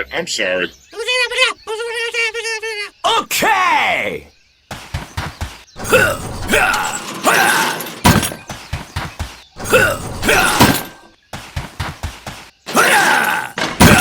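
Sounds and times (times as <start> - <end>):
crashing clattering impacts: 5.8 - 8.7, 9.6 - 11.1, 12.7 - 14.0.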